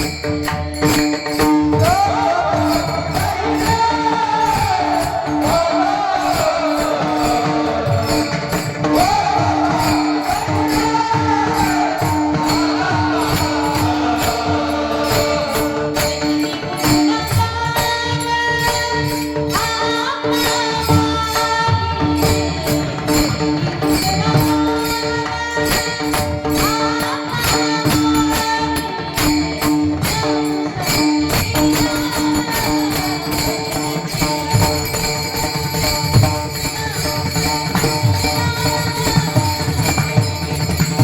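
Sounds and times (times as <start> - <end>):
small hand cymbals clashing: 0.0 - 2.0, 22.3 - 41.0.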